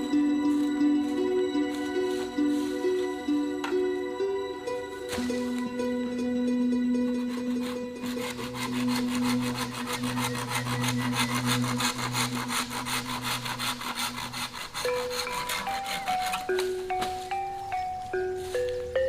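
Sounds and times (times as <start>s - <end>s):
soft background music: 0.0s - 19.0s
rapid rasping strokes: 6.9s - 17.4s.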